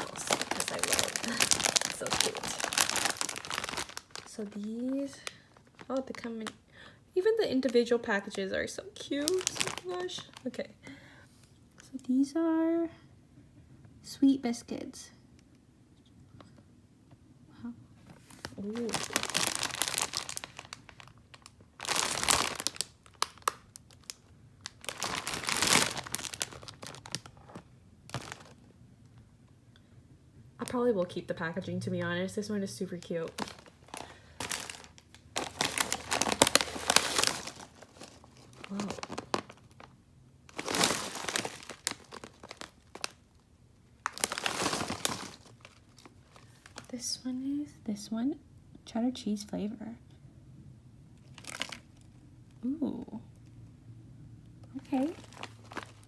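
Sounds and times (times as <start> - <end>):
snack packaging crinkling: 0.0 - 6.6, 9.0 - 10.6, 18.2 - 28.7, 33.0 - 43.4, 44.0 - 46.9, 51.2 - 52.2, 54.8 - 56.0.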